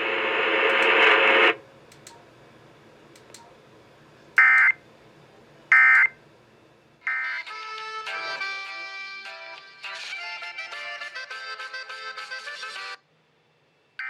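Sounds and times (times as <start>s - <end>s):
tune playing: 7.1s - 11.7s.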